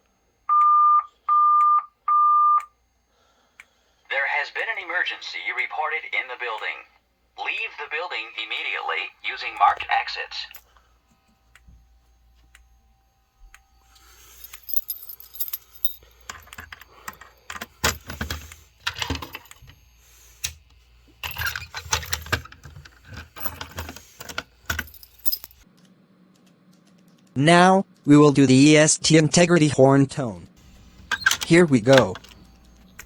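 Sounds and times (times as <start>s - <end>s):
low steady hum: 0.0s - 33.0s
rattling and clicks of handling: 14.4s - 19.8s, 21.2s - 25.6s, 30.7s - 33.0s.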